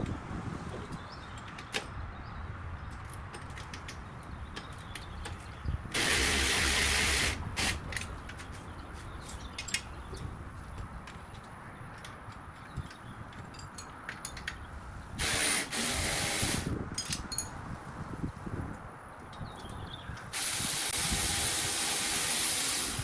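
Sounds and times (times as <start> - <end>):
loud hiss: 15.2 - 16.7, 20.3 - 23.0.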